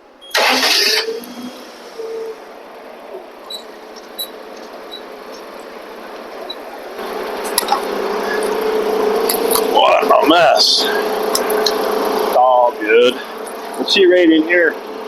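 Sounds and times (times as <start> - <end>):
forklift engine running: 0.0 - 15.0
steady whine: 0.0 - 15.0
faint ticks and squeaks: 3.1 - 9.7.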